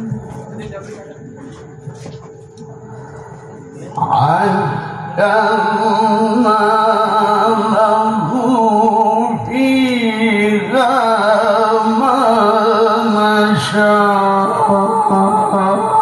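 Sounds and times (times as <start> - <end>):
man chanting melodically: 3.7 - 16.0.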